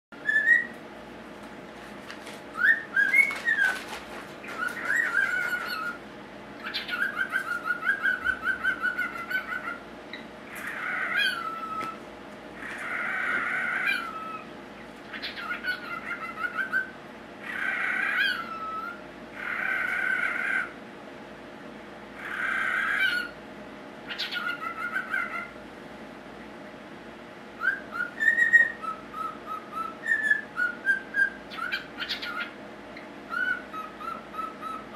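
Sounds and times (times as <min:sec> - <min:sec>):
bird whistles: 0:00.2 - 0:00.8, 0:02.5 - 0:03.8, 0:04.6 - 0:06.0, 0:06.6 - 0:09.8, 0:15.1 - 0:17.0, 0:17.6 - 0:19.0, 0:27.6 - 0:32.5, 0:33.3 - 0:34.9.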